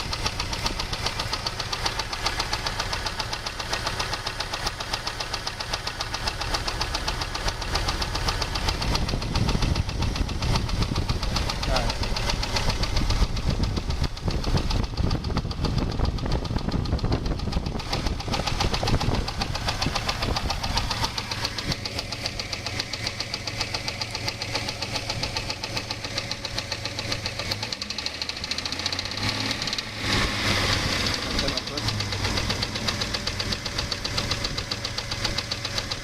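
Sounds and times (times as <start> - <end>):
engine running with fast knocking: 0.0 - 36.0
wind buffeting microphone: 8.7 - 11.4, 12.5 - 21.0.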